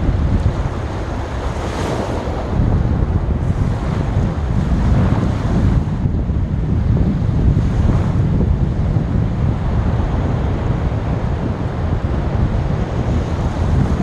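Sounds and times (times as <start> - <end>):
sea waves washing onto beach: 0.0 - 6.4
wind buffeting microphone: 0.0 - 14.0.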